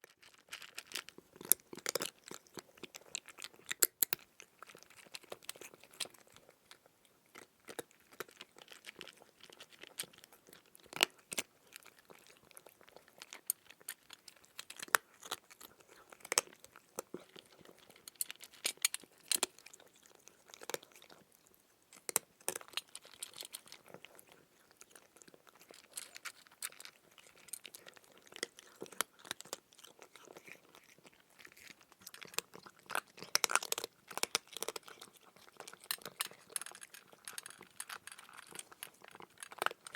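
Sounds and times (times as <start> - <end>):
crunching crisp food: 0.0 - 39.9.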